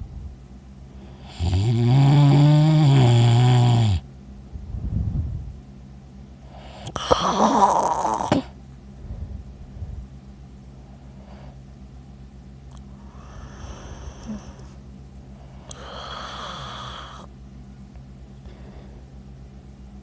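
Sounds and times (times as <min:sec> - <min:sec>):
man snoring heavily: 0:01.1 - 0:04.0, 0:06.6 - 0:08.5, 0:15.7 - 0:17.3
soft breathing: 0:10.8 - 0:11.8, 0:12.8 - 0:17.3, 0:18.4 - 0:19.2.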